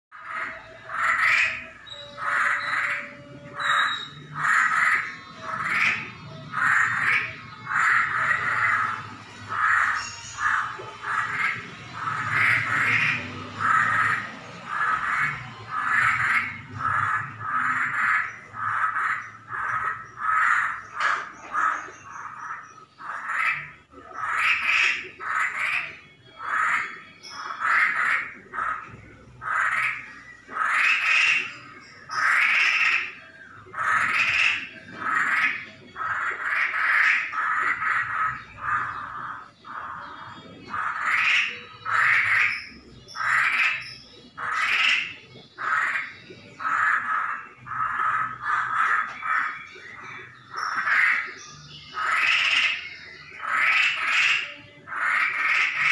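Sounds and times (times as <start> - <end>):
bird giving harsh raspy calls: 0.2 - 55.9.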